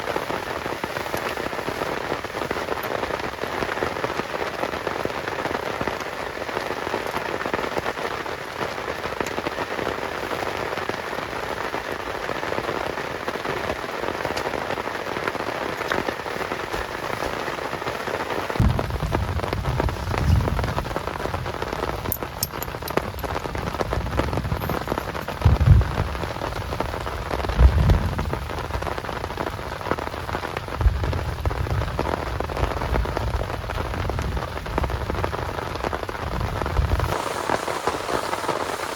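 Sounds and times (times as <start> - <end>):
heavy rain: 0.0 - 38.9
low rumbling: 18.6 - 22.1, 23.1 - 28.6.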